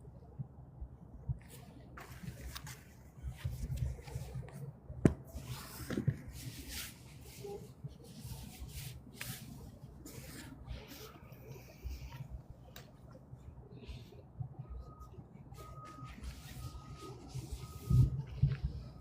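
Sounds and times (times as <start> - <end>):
rustling and scuffing: 1.4 - 4.5.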